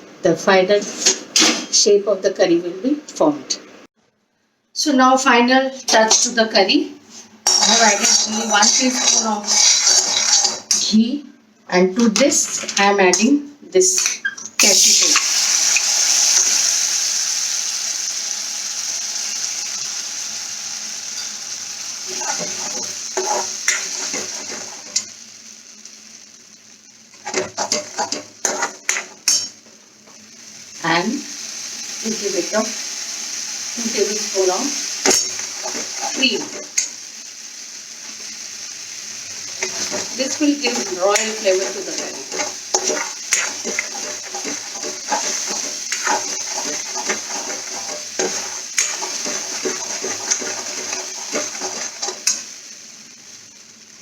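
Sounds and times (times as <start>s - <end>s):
paste sizzling in a pan: 5.9s - 11.0s, 14.6s - 54.0s
spoon knocking and scraping pan: 7.5s - 10.8s, 22.1s - 25.1s, 27.2s - 30.2s, 35.0s - 36.9s, 39.5s - 52.5s.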